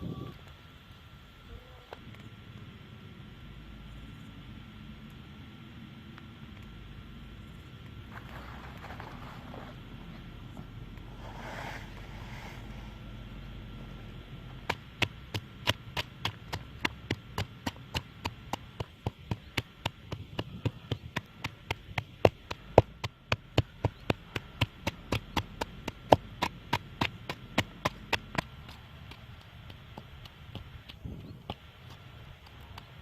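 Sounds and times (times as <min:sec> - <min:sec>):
blade chopping on wood: 0:14.6 - 0:31.6.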